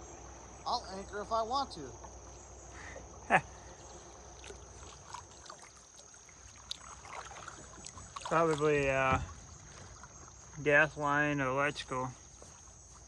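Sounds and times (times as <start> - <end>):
paddle dipping and dripping: 2.0 - 13.0
paddle knocking kayak hull: 6.7 - 10.6.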